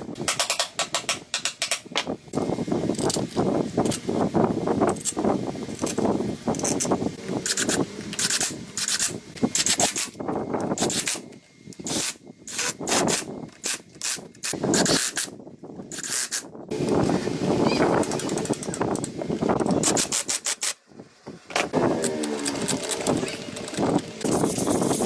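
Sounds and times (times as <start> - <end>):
hand tools rubbing and scraping: 21.6 - 25.0.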